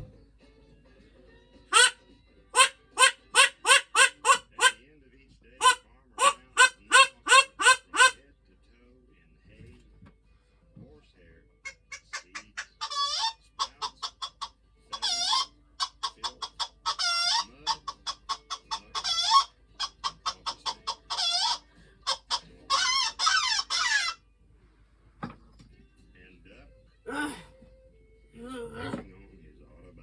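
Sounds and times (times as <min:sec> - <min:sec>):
hen cackling: 0:01.7 - 0:04.8, 0:05.6 - 0:08.2, 0:11.7 - 0:24.2.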